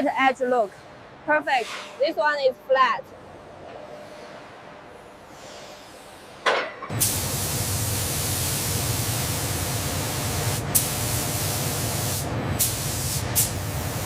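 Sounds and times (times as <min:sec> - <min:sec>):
spray gun hissing: 0:07.0 - 0:14.0.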